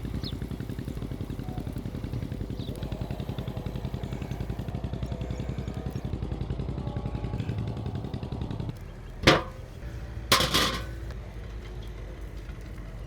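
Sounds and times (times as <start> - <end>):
sharp clattering knocks: 9.2 - 11.0.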